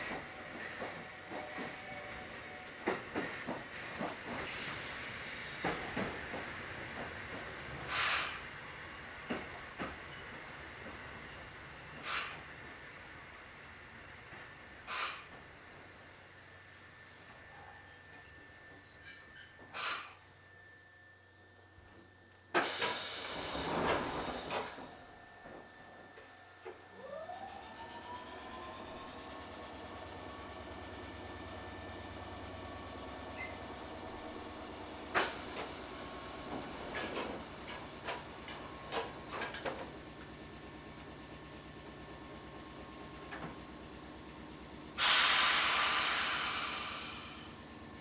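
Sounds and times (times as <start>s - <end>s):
pneumatic doors rush of air: 7.7s - 8.6s, 11.7s - 12.5s, 14.8s - 15.6s, 22.6s - 25.0s, 35.1s - 40.0s, 44.9s - 47.9s
short air hiss: 45.0s - 47.5s.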